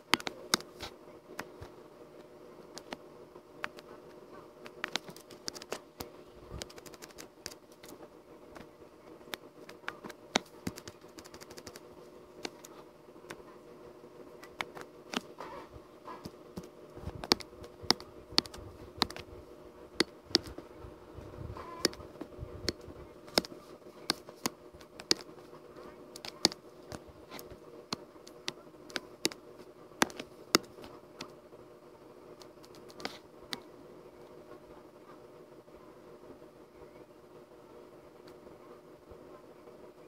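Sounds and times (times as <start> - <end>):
low electrical hum: 0.0 - 40.0
computer keys clicking: 4.6 - 5.8, 6.6 - 8.0, 9.3 - 11.8, 12.4 - 12.7, 14.4 - 15.2, 16.6 - 19.2, 20.0 - 20.6, 22.7 - 23.5, 24.1 - 25.3, 26.2 - 26.6, 27.3 - 29.4, 30.0 - 31.3, 32.4 - 33.6.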